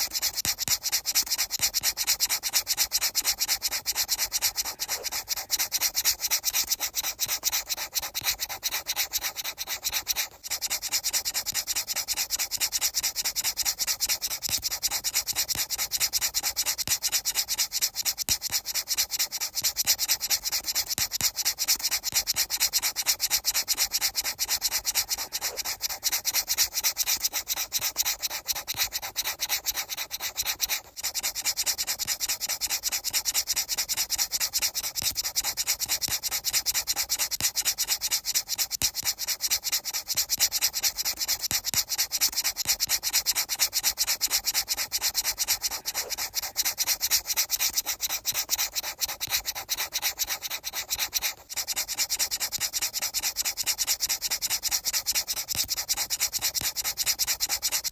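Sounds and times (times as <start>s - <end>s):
rhythmic rasping noise: 45.1s - 46.9s.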